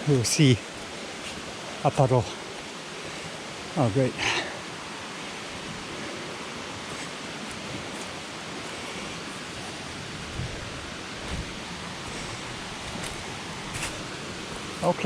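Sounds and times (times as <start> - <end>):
waterfall rushing: 0.0 - 15.0
soft low thumps: 10.3 - 13.2.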